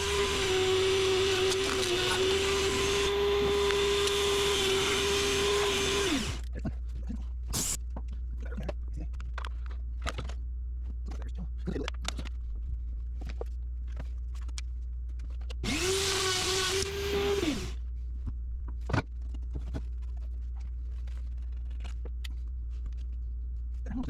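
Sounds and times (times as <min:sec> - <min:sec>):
rotary tool spinning: 0:00.0 - 0:06.4, 0:15.6 - 0:17.8.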